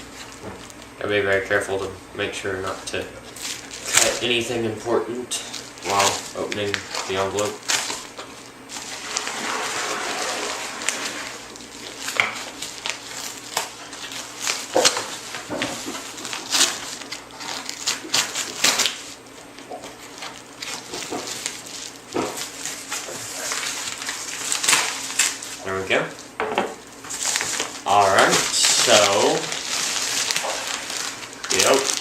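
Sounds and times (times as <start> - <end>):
packaging rustling and crinkling: 0.0 - 1.0, 2.6 - 32.0
envelope being torn open: 3.4 - 4.4, 5.4 - 8.2, 8.8 - 19.2, 19.8 - 25.6, 27.1 - 32.0.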